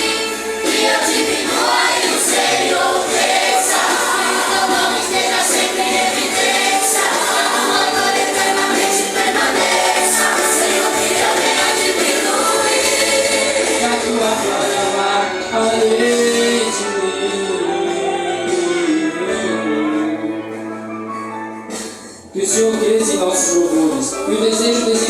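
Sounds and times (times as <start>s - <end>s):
group singing with band: 0.0s - 15.2s.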